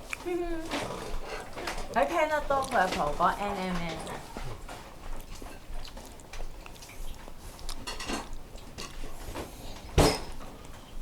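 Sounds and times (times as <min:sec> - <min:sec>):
dishes and utensils clattering: 0:00.7 - 0:02.0, 0:07.8 - 0:10.9.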